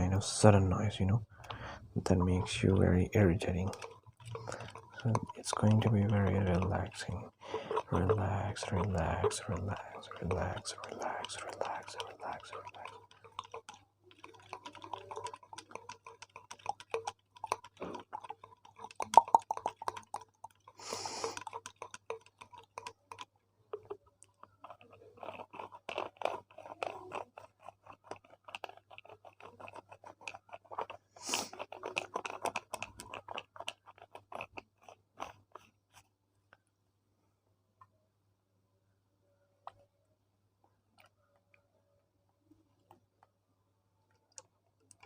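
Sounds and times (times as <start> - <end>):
small clicks and crackles: 1.5 - 36.6.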